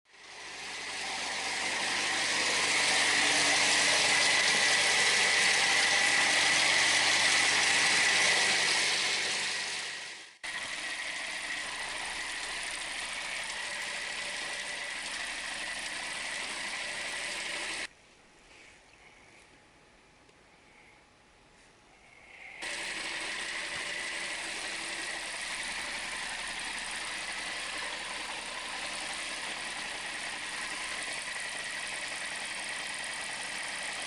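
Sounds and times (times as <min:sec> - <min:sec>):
car engine running: 0:22.6 - 0:34.0.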